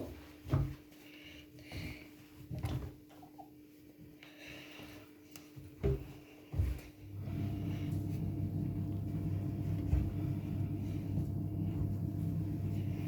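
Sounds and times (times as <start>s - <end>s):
washing machine running: 6.6s - 13.0s.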